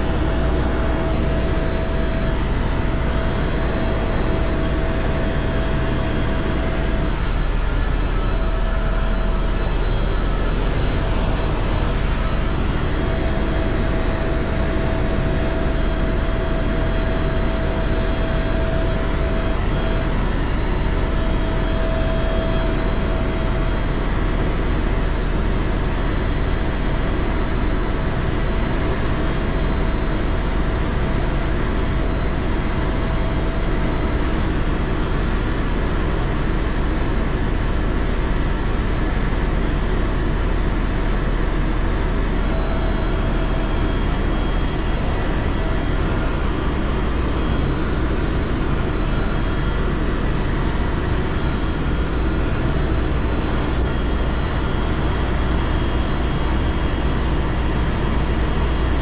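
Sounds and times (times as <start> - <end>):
helicopter engine and rotor drone: 0.0 - 59.0
thin engine whine: 40.8 - 55.6.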